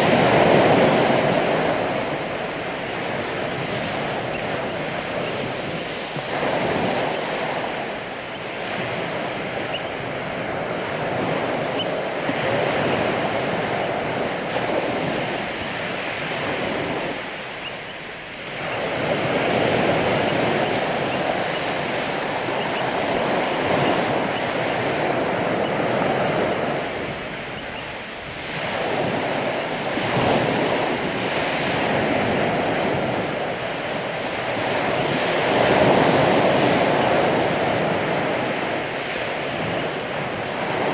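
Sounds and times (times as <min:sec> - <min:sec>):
ocean surf breaking: 0:00.0 - 0:40.9.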